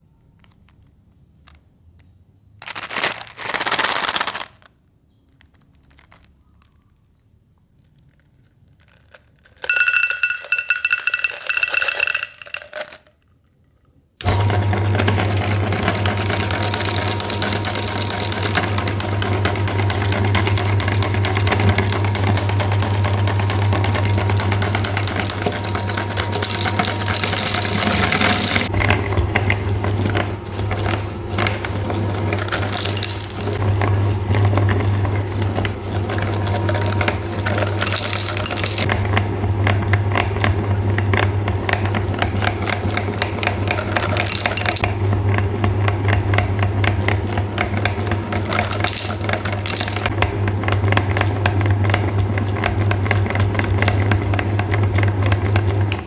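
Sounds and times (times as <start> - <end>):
candy crackling being crushed: 2.6 - 9.7, 23.7 - 28.8, 29.6 - 33.7, 34.6 - 38.9, 42.0 - 44.8, 47.6 - 50.2
electric meat grinder humming: 14.2 - 56.0.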